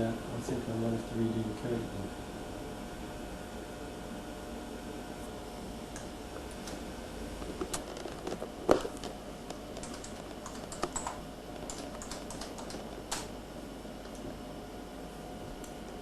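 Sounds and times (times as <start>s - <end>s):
faint steady hum: 0.0s - 16.0s
keyboard typing: 7.4s - 13.3s.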